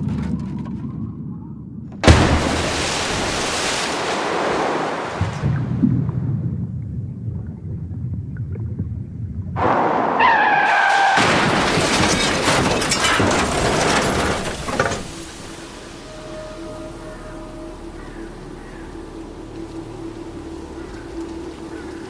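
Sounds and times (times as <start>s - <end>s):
low rumble: 5.2s - 10.2s
car tyres screeching: 10.1s - 11.2s
crash of metal and breaking glass: 10.7s - 15.7s.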